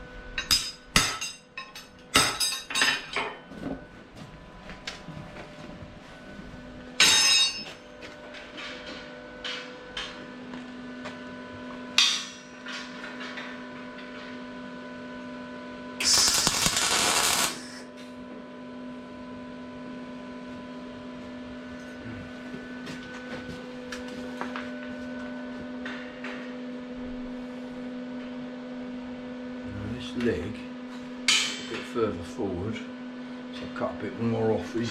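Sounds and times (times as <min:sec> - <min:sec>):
hammer striking steel bar: 0:00.4 - 0:03.0, 0:07.0 - 0:07.8
steady low hum: 0:14.6 - 0:25.8
harsh burst of noise: 0:16.0 - 0:17.8.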